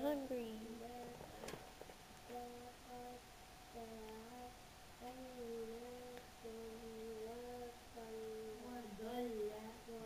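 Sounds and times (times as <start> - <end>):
person humming softly: 2.2 - 3.2, 3.8 - 10.0.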